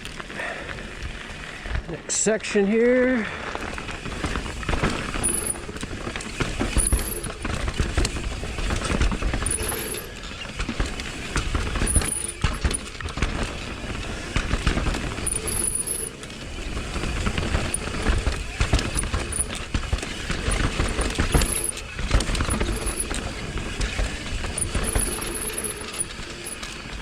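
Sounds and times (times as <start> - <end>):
bike tyres rolling on dirt: 0.0 - 27.0
bike rattling and clattering: 3.2 - 27.0.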